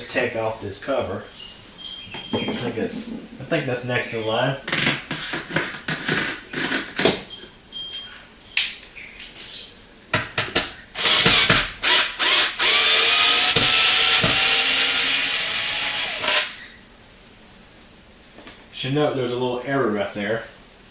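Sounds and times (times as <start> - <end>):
power drill-driver running: 11.0 - 16.6.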